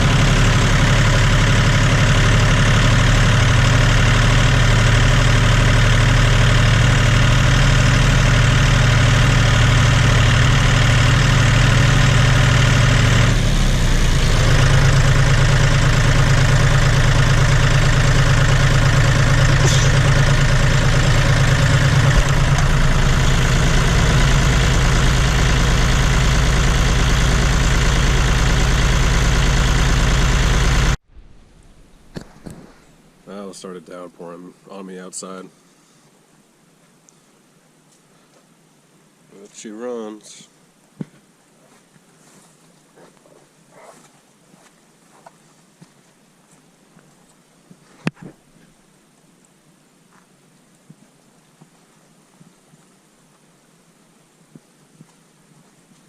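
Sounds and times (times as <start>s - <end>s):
tractor diesel engine running: 0.0s - 32.8s.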